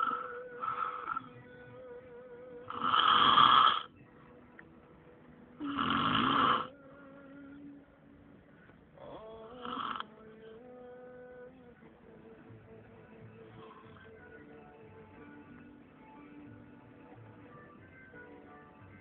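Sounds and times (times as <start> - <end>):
person snoring: 0.0 - 1.4, 2.6 - 3.9, 5.6 - 6.7, 9.0 - 10.1.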